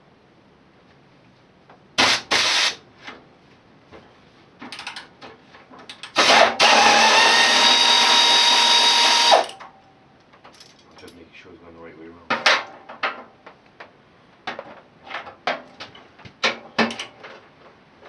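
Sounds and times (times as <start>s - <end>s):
pneumatic wrench bursts: 2.0s - 2.8s, 6.1s - 9.6s.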